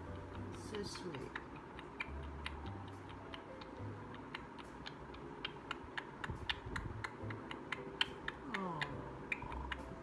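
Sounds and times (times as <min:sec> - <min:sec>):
electric fan humming: 0:00.0 - 0:10.0.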